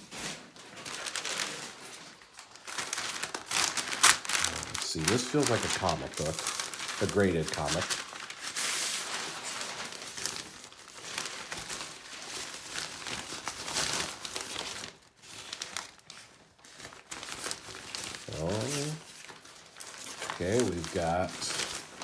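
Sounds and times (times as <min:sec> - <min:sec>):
packaging crinkling and tearing: 0:00.1 - 0:22.0.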